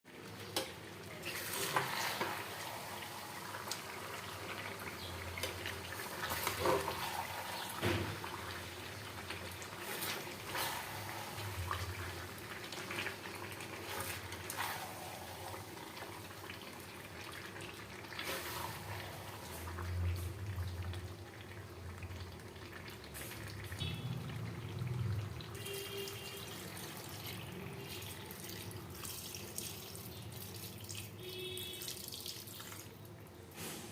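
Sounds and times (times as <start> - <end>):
cooking hiss: 0.4 - 20.4.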